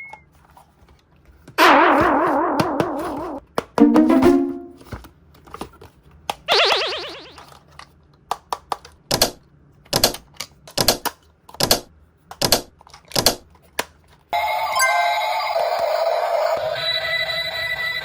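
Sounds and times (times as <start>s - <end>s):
music: 3.8s - 4.9s.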